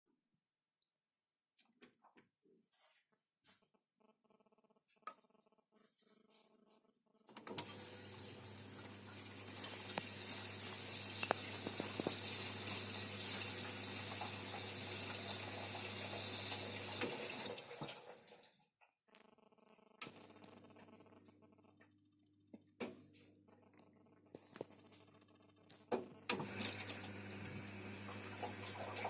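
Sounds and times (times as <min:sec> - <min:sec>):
water running: 0:07.4 - 0:18.6, 0:26.3 - 0:29.0.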